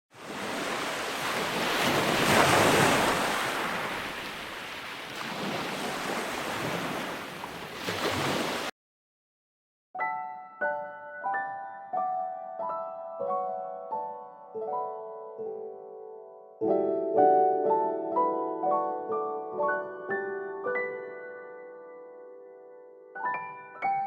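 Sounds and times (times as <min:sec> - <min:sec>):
surf washing onto beach: 0:00.2 - 0:08.7.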